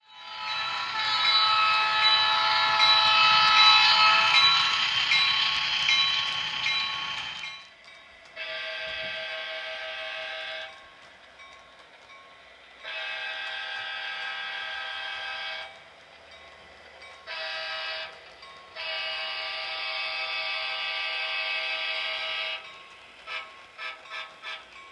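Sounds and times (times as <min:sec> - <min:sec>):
model locomotive horn blasts: 0:08.3 - 0:10.8, 0:12.8 - 0:15.8, 0:17.3 - 0:18.2, 0:18.8 - 0:22.7, 0:23.3 - 0:24.8.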